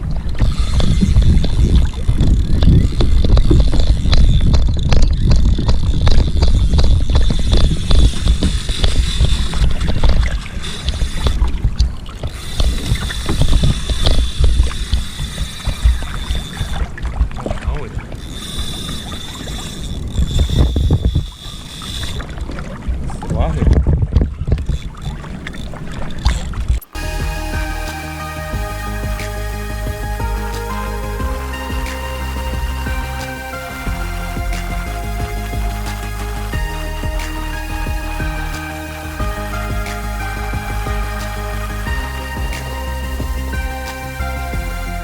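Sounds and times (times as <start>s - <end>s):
water slapping against hull: 0.0s - 27.0s
thin high whine: 26.8s - 45.0s.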